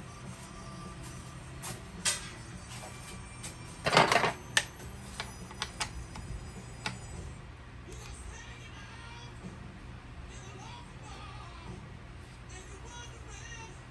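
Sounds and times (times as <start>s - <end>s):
rattling clatter: 3.8s - 4.4s.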